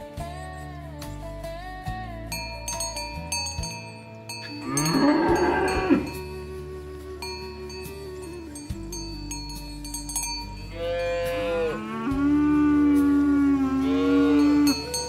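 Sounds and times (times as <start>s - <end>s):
cowbell clinking: 2.3s - 6.6s, 7.2s - 11.7s, 14.4s - 15.0s
ox mooing: 4.4s - 6.8s, 10.6s - 15.0s.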